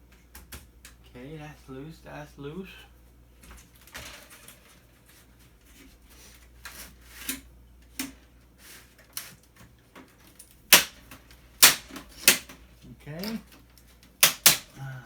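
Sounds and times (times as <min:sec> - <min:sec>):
small parts clicking and rustling: 0:08.9 - 0:14.9.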